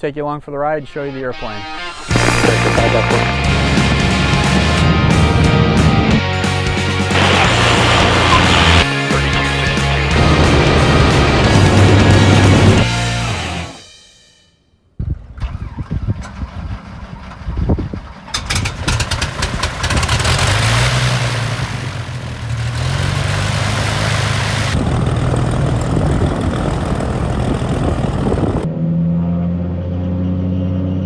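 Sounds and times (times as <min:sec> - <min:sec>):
aircraft piston engines droning: 0:02.0 - 0:13.8, 0:18.5 - 0:28.6.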